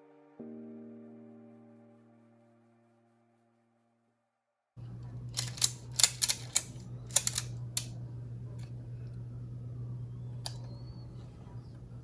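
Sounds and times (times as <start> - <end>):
background music: 0.0 - 4.1
room low hum: 4.8 - 12.0.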